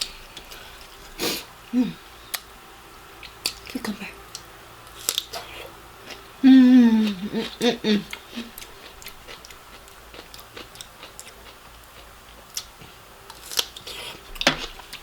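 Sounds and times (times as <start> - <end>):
woman humming mmm: 1.2 - 2.2, 5.4 - 8.7
chewing cucumber crunches: 4.3 - 6.2, 7.0 - 12.7, 13.3 - 15.0.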